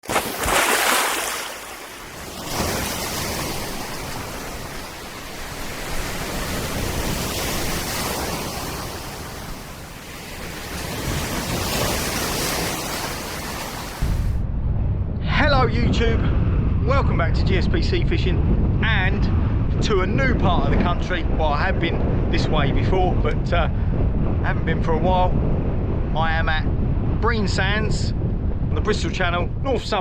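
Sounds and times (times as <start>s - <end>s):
surf on a beach: 0.0s - 14.4s
strong wind rushing: 0.0s - 30.0s
wind buffeting microphone: 0.4s - 30.0s.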